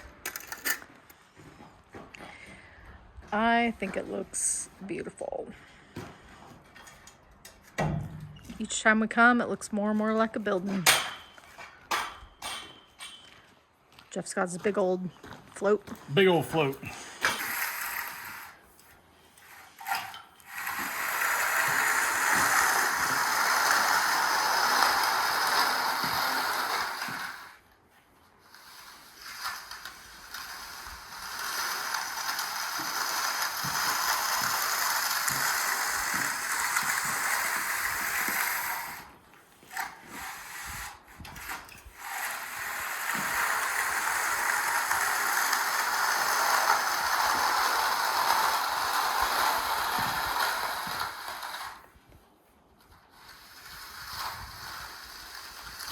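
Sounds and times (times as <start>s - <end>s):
float scraping across concrete: 14.4s - 55.9s.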